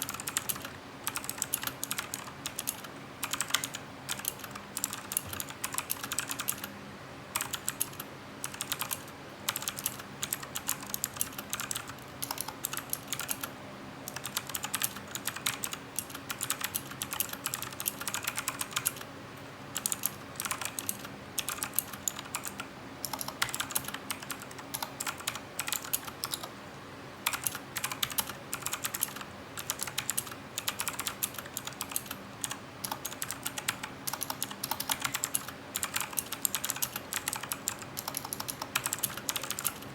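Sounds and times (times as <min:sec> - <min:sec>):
mechanical keyboard key clicks: 0:27.3 - 0:39.8.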